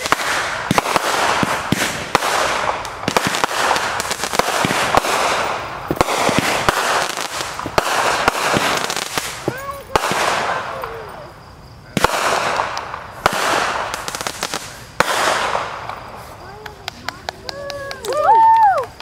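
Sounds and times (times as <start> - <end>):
fireworks crackling and popping: 0.0 - 19.0.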